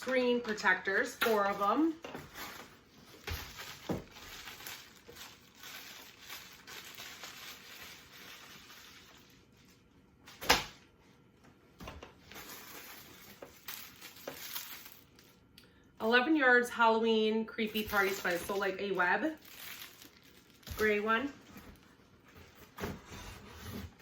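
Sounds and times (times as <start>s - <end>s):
plastic wrapping rustling: 0.0s - 10.4s, 12.2s - 15.5s, 17.7s - 23.0s.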